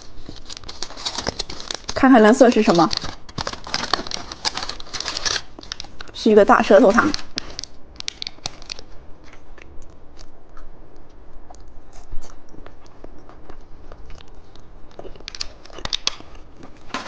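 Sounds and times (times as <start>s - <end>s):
plastic packaging crinkling: 0.0s - 9.4s.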